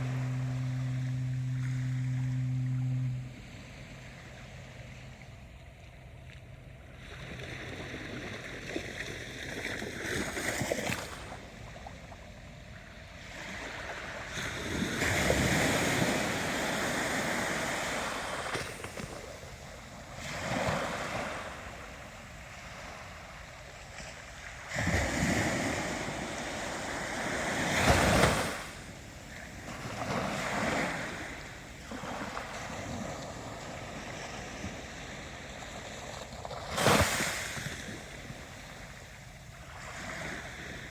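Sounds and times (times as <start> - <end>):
ocean waves breaking: 0.0 - 5.2, 24.7 - 40.9.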